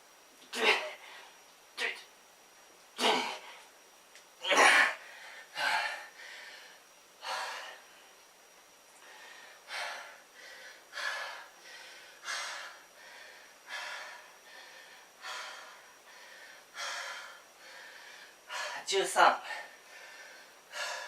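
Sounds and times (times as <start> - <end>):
man breathing hard: 4.9 - 8.0, 9.0 - 21.0.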